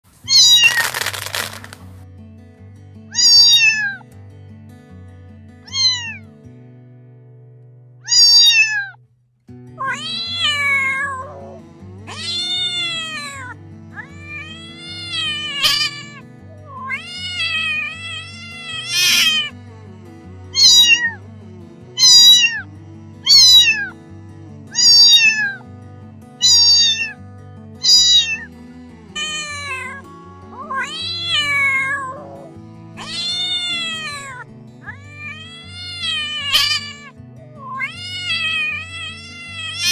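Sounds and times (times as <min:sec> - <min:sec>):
cat meowing: 0:00.2 - 0:01.8, 0:03.1 - 0:04.0, 0:05.7 - 0:06.2, 0:08.0 - 0:09.0, 0:09.8 - 0:19.6, 0:20.5 - 0:21.2, 0:22.0 - 0:23.9, 0:24.7 - 0:25.6, 0:26.4 - 0:27.2, 0:27.8 - 0:28.5, 0:29.2 - 0:39.9
background music: 0:09.6 - 0:39.9.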